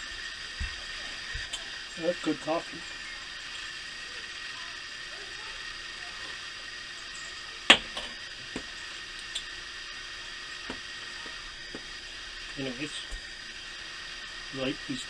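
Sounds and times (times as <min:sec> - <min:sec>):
steady background hiss: 0:00.0 - 0:15.0.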